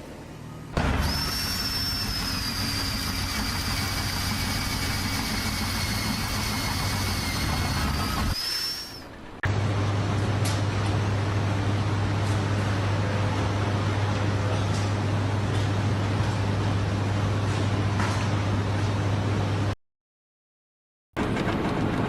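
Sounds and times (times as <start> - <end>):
heavy machine engine running: 0.7 - 14.4.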